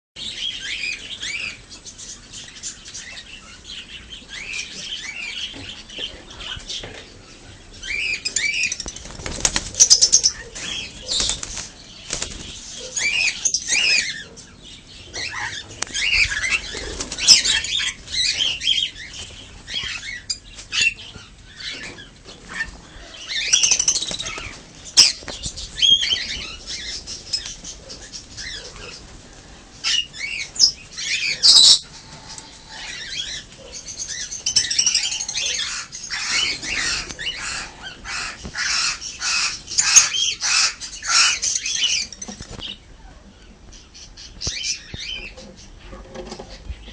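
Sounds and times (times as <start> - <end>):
birds chirping: 0.2 - 46.9
wings flapping: 8.8 - 12.8, 16.1 - 18.4, 23.7 - 25.8.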